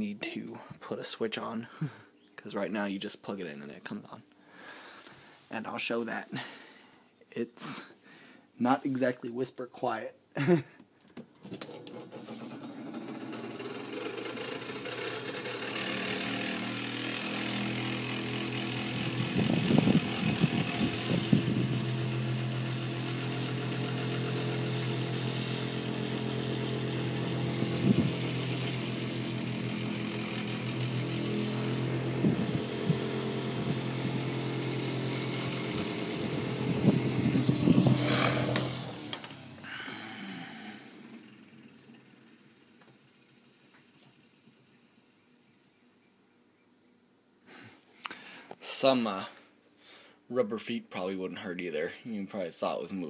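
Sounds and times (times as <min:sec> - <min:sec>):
fan rattling on its base: 0:11.3 - 0:39.9
fan motor humming: 0:11.5 - 0:43.6.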